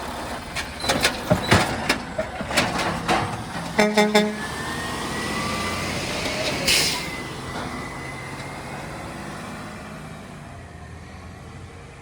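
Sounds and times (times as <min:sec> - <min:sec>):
truck engine running: 0:00.0 - 0:12.0
air brake hiss: 0:06.5 - 0:07.2.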